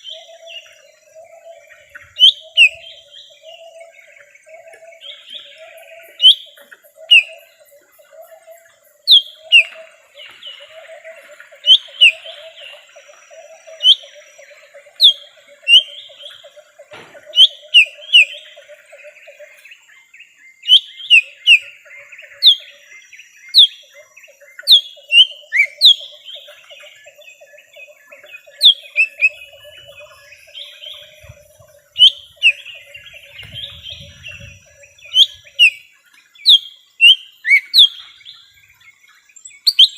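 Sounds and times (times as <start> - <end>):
soft bird twittering: 0.0 - 39.9
bird whistled calls: 1.4 - 3.8, 5.1 - 7.5, 9.1 - 9.9, 11.6 - 12.6, 13.4 - 14.1, 15.0 - 16.2, 16.9 - 18.4, 20.6 - 21.7, 24.6 - 26.2, 28.6 - 35.8, 36.4 - 38.0, 39.6 - 39.9.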